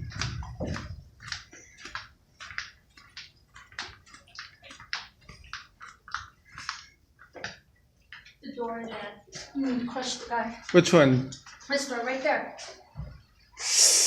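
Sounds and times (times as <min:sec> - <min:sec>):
footsteps on gritty floor: 0:00.0 - 0:10.8.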